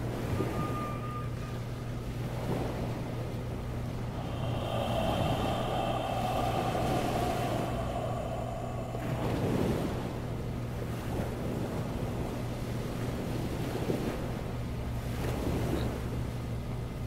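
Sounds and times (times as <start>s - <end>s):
wind: 0.0s - 17.0s
wave washing in: 2.3s - 12.4s
ocean surf: 3.7s - 12.3s
low steady hum: 3.8s - 12.3s.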